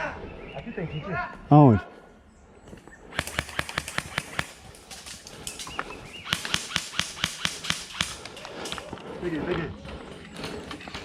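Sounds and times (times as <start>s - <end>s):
airsoft gun shots: 3.1s - 4.7s, 6.2s - 8.8s.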